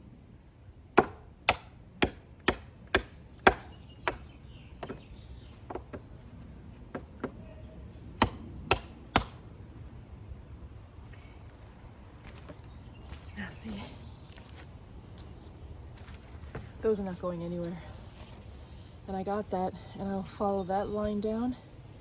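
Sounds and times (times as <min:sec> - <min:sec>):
hammer striking metal hooks: 0:08.2 - 0:09.4.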